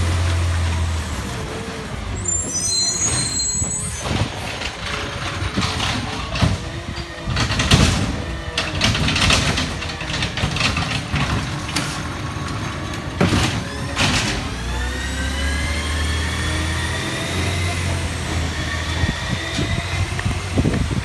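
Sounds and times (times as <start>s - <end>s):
diesel engine revving: 0.0s - 21.0s
metallic clanks and bangs: 3.0s - 15.0s.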